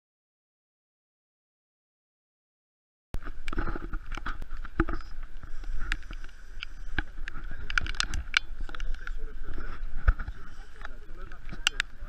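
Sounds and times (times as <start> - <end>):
faint steady hum: 3.2 - 12.0
sharp tapping patter: 3.4 - 12.0.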